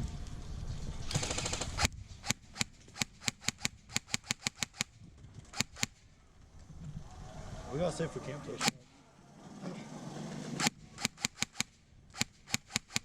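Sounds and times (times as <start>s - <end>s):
airsoft gun shots: 1.1s - 4.9s, 5.6s - 6.0s, 10.6s - 13.0s.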